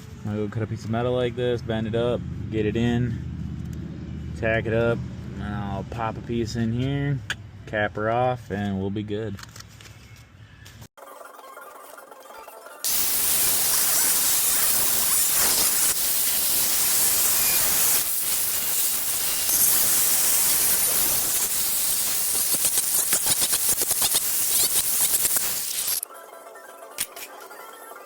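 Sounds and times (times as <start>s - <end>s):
power tool cutting sheet steel: 12.9s - 26.0s.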